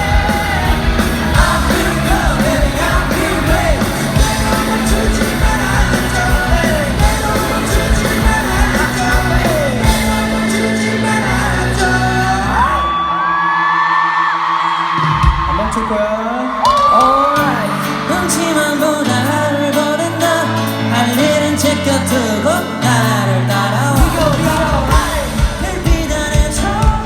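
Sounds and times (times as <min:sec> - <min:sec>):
live pop-rock band playing: 0:00.0 - 0:13.2, 0:14.9 - 0:27.0
crowd yelling along: 0:00.0 - 0:19.4.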